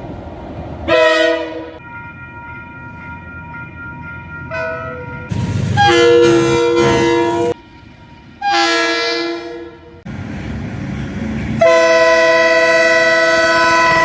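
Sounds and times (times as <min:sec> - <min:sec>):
low rumble of a train: 0:00.0 - 0:14.0
train horn chord: 0:00.9 - 0:01.8, 0:05.7 - 0:07.6, 0:08.4 - 0:10.0, 0:11.6 - 0:14.0.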